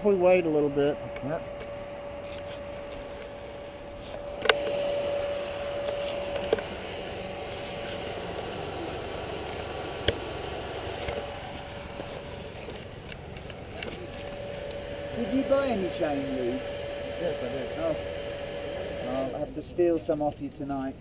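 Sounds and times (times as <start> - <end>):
road traffic hum: 0.0 - 21.0.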